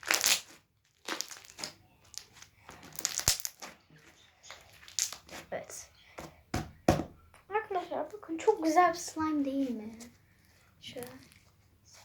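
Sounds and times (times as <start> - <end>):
slime crackling and popping: 0.0 - 3.8, 4.5 - 5.4.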